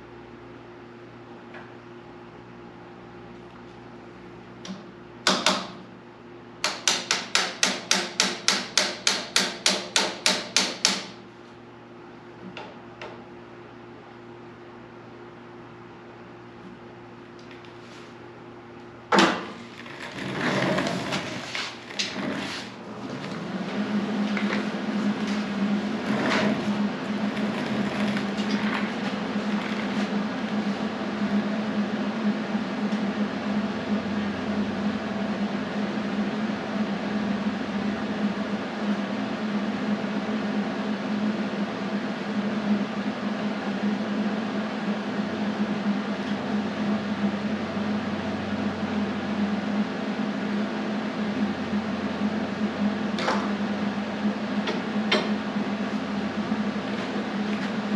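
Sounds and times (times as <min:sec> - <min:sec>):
motor humming: 0:19.4 - 0:31.6.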